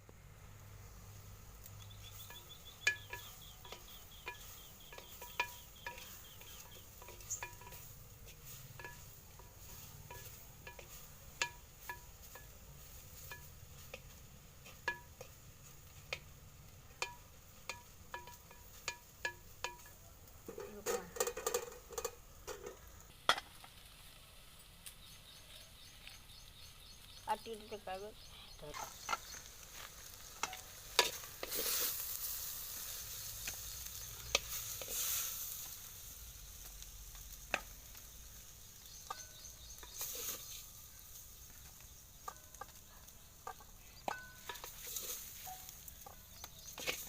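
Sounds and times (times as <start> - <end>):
insect chirping: 0.6 - 19.9, 25.0 - 47.0
metal utensil clinking on pan: 1.8 - 16.3, 16.9 - 23.5, 30.3 - 31.9, 42.2 - 47.0.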